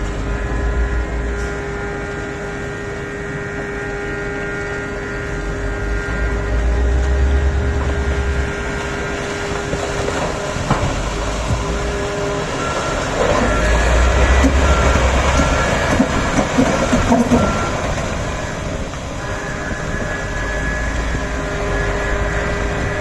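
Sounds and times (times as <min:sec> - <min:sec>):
excavator engine rumbling: 0:00.0 - 0:23.0
reversing alarm beeping: 0:00.0 - 0:23.0
bucket scraping and clattering on rock: 0:12.8 - 0:18.1.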